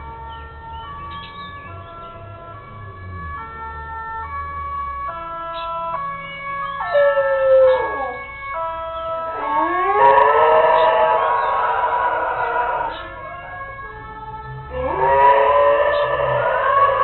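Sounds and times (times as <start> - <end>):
siren in stepped tones: 0.0 - 17.0
dog howling: 6.8 - 8.3, 9.3 - 13.2, 14.7 - 17.0.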